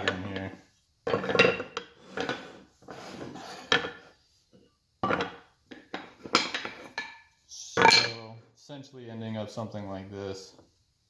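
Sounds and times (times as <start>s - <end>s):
wood scraping: 0.0s - 4.1s.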